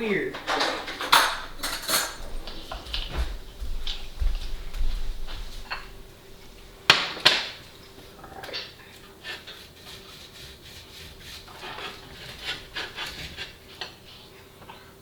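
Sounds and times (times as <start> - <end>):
faint steady hum: 0.0 - 15.0
objects rustling and clicking: 0.3 - 4.6.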